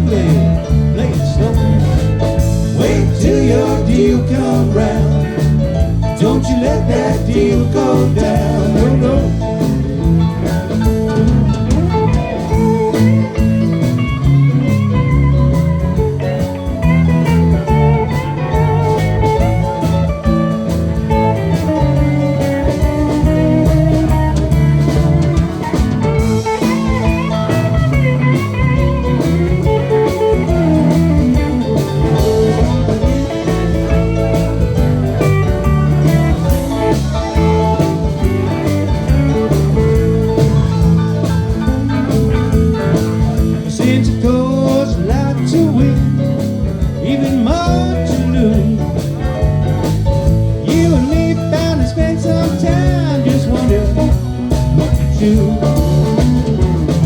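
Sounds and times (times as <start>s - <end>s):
blues guitar lead: 0.0s - 57.0s
drums and bass: 0.0s - 57.0s.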